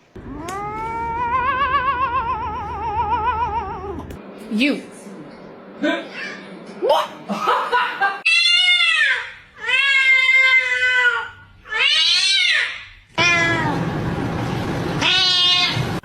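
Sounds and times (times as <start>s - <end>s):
cat meowing: 0.2s - 4.1s, 13.2s - 13.8s, 15.0s - 16.0s.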